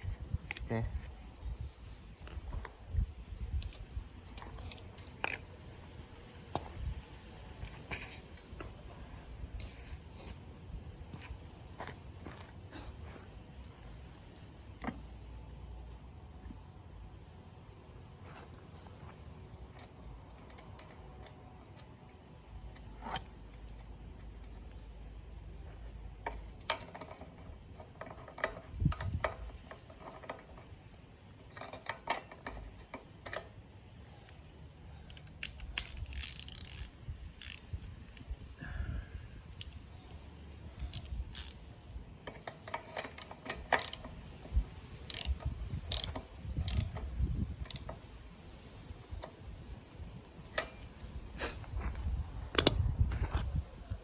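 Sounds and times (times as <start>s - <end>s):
ratchet wrench clicking: 35.1s - 38.3s, 39.6s - 39.8s, 40.7s - 41.7s, 42.7s - 44.2s, 45.0s - 48.0s.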